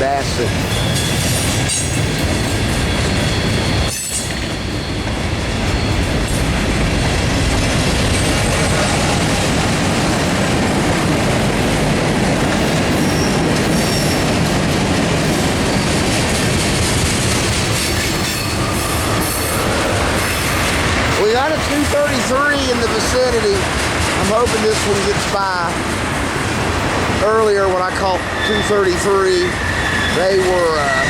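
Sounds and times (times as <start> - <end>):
train wheels rumbling on rails: 0.0 - 31.0
faint wheel squeal: 28.3 - 31.0.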